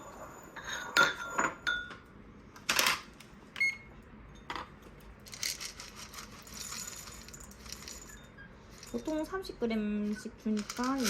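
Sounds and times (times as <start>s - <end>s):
kibble clinking against bowls: 4.3s - 11.0s
kibble rattling: 5.3s - 9.3s, 10.4s - 11.0s.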